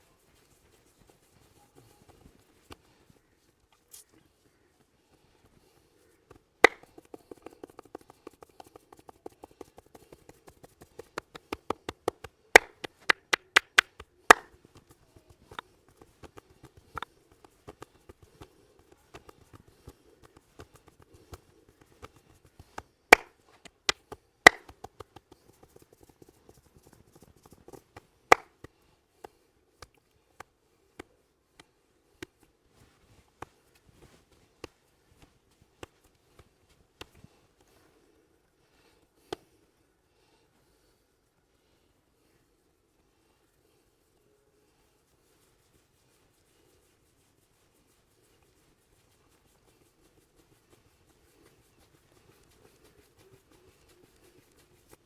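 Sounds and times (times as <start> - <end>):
hands slapping and patting: 0.0 - 4.6, 5.2 - 38.1, 38.8 - 39.6, 45.0 - 55.0
soft rubbing: 0.0 - 28.4, 30.3 - 55.0
loud hand claps: 6.6 - 7.0, 11.0 - 14.6, 23.1 - 23.3, 24.5 - 25.3, 28.3 - 28.5.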